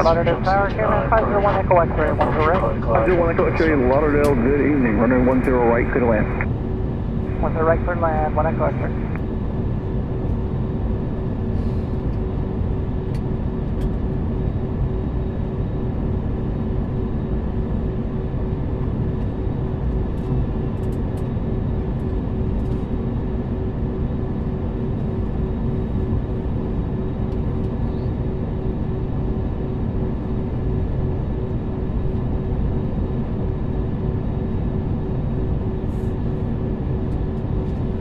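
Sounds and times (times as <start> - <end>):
airliner cabin rush and hum: 0.0 - 16.5, 34.6 - 38.0
jet engines idling with whine: 0.0 - 38.0.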